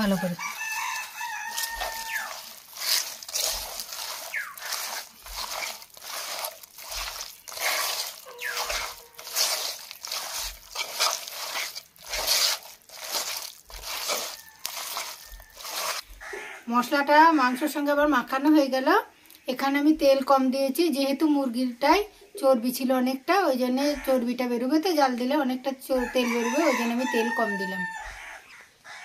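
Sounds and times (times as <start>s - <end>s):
hands squishing raw chicken: 0.0s - 16.6s.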